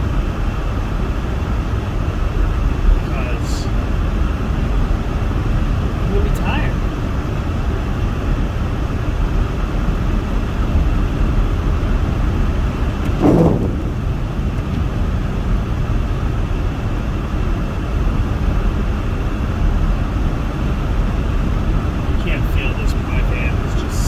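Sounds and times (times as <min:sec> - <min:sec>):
heater fan blowing: 0:12.7 - 0:15.2.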